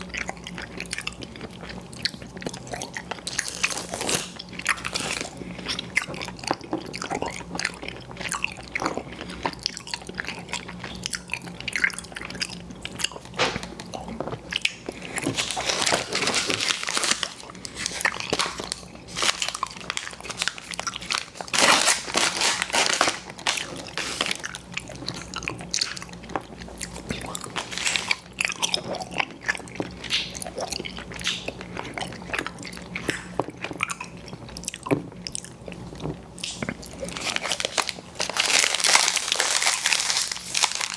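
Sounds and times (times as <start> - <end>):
chewing sweets close up: 0.0 - 40.9.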